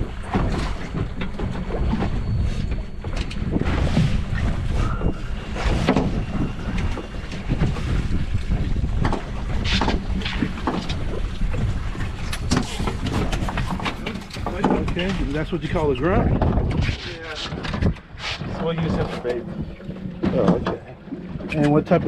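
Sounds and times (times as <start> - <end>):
wind buffeting microphone: 0.0 - 22.0
knocks on boat: 12.4 - 15.5, 16.2 - 16.9.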